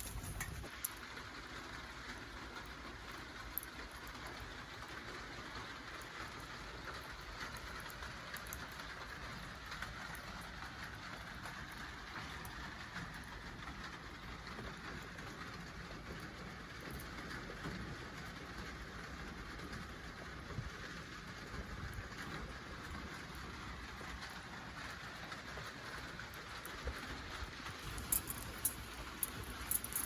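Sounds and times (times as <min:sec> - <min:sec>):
wood fire crackling and popping: 0:00.0 - 0:30.0.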